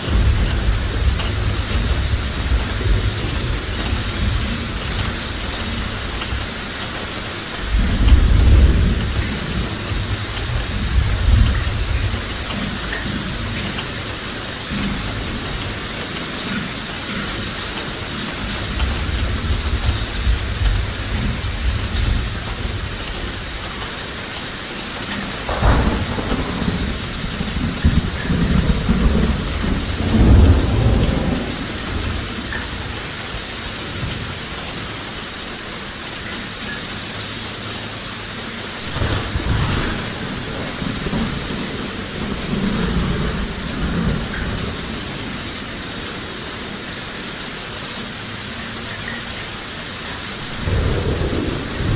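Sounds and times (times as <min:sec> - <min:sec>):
thunder crack and rumble: 0:00.0 - 0:24.2, 0:25.0 - 0:34.4, 0:38.8 - 0:45.9, 0:50.3 - 0:51.9
heavy rain hissing: 0:00.0 - 0:51.9.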